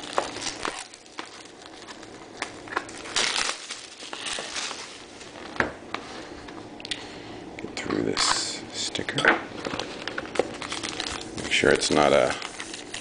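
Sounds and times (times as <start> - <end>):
plastic shrink-wrap crinkling: 0.0 - 6.3, 9.6 - 13.0.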